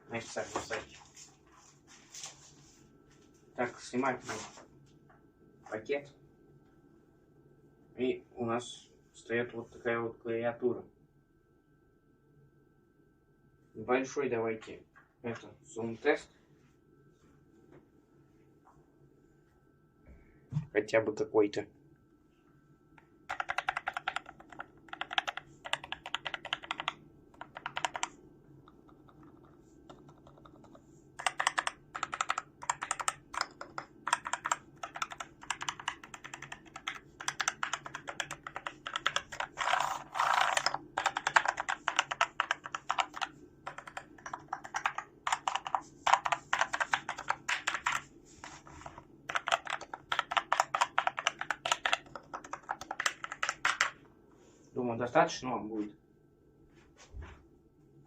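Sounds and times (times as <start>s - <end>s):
mechanical keyboard typing: 23.3s - 54.0s.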